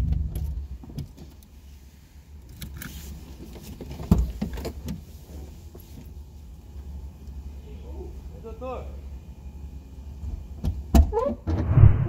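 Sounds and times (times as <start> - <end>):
loud thump: 11.5 - 12.0
low steady rumble: 11.5 - 12.0.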